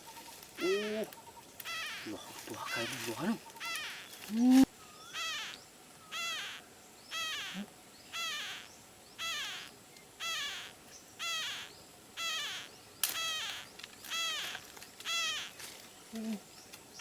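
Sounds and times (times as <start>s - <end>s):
parrot chick raspy begging calls: 1.6s - 4.1s, 5.1s - 15.6s.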